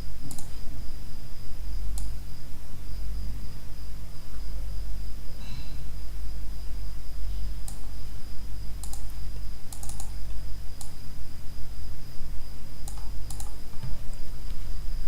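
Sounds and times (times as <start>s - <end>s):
steady low hum: 0.0s - 15.0s
computer keyboard keys clicking: 0.2s - 0.5s, 8.8s - 9.1s, 9.7s - 10.1s, 12.8s - 13.9s
thin high whine: 5.4s - 7.6s.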